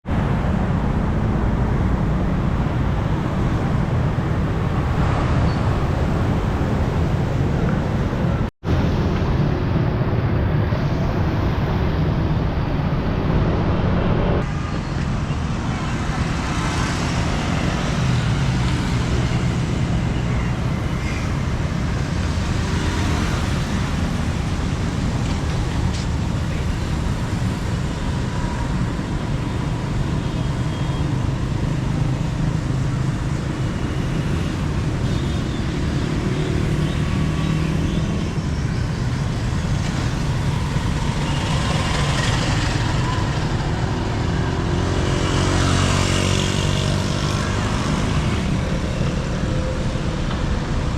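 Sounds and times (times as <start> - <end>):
road traffic on wet streets: 0.0 - 50.9.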